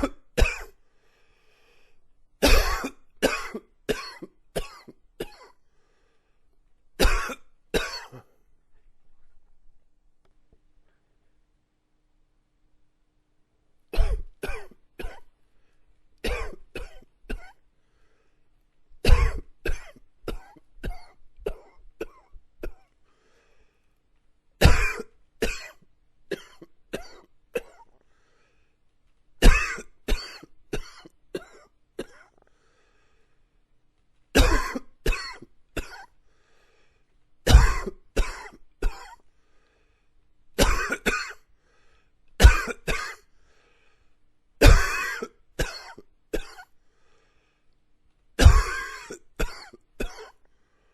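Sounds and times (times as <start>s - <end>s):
man coughing: 0.0s - 0.8s, 2.4s - 5.6s, 7.0s - 8.4s, 14.0s - 15.3s, 16.2s - 17.6s, 19.0s - 22.9s, 24.6s - 28.0s, 29.4s - 32.4s, 34.4s - 36.1s, 37.5s - 39.2s, 40.6s - 41.4s, 42.4s - 43.2s, 44.6s - 46.7s, 48.4s - 50.4s.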